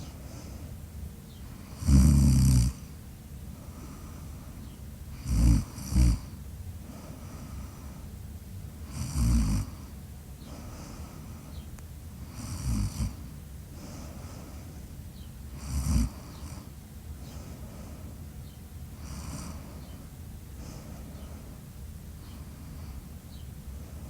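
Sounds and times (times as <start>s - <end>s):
steady low background noise: 0.0s - 24.0s
loud snoring: 1.6s - 2.8s, 5.2s - 6.4s, 8.9s - 9.8s, 12.2s - 13.2s, 15.6s - 16.7s, 19.0s - 19.7s.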